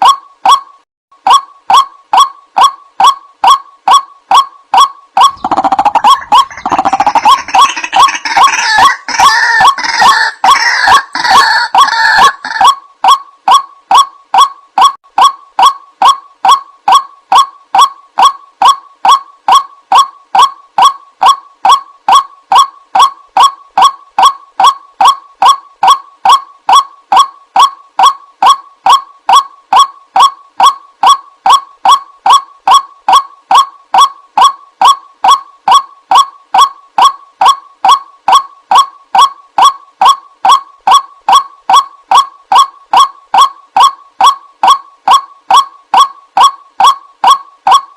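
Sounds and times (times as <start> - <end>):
waterhen honking calls: 5.2 - 12.8.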